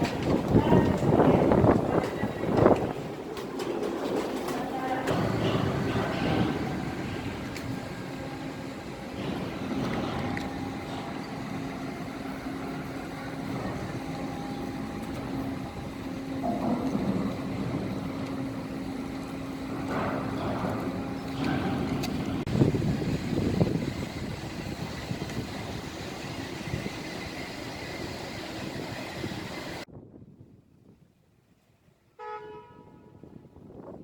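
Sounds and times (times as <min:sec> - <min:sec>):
low road rumble: 0:00.0 - 0:31.0
vehicle engine hum: 0:04.6 - 0:29.9.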